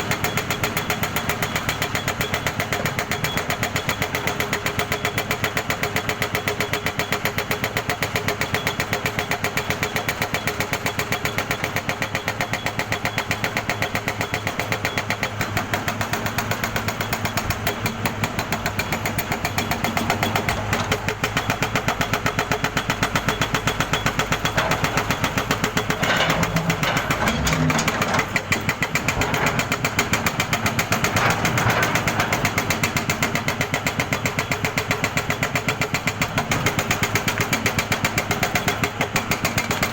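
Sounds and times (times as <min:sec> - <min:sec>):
jackhammer running: 0:16.1 - 0:34.5.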